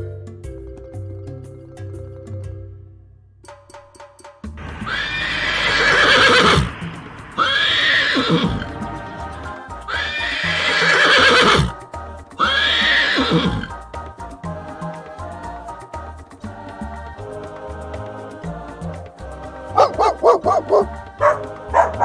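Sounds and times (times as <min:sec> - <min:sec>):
background music: 0:00.0 - 0:22.0
horse neighing: 0:04.6 - 0:11.8, 0:12.4 - 0:13.8.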